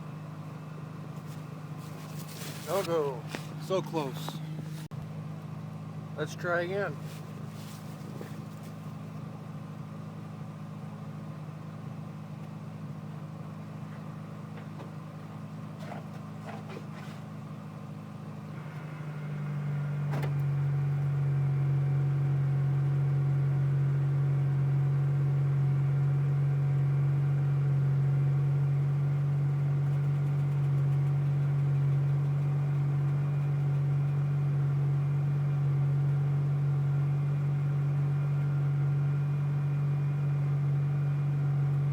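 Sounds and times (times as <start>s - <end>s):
low engine drone: 0.0s - 28.6s.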